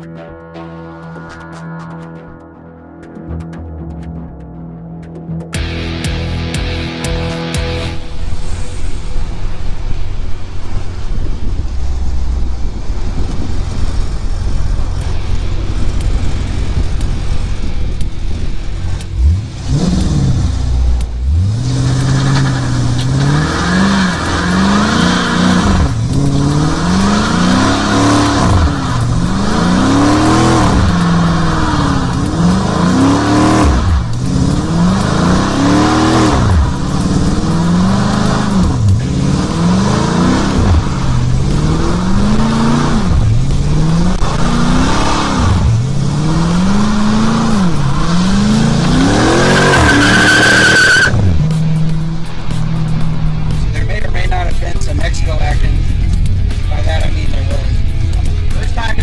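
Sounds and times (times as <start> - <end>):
car engine rumbling and revving: 0.0 - 59.0.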